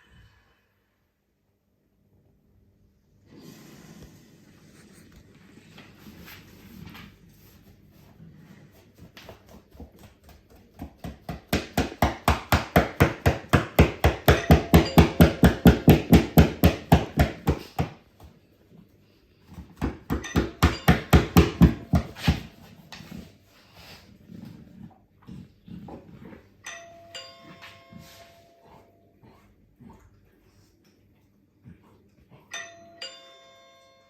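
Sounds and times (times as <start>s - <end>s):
rapid hammering: 10.8s - 18.0s, 19.8s - 22.3s.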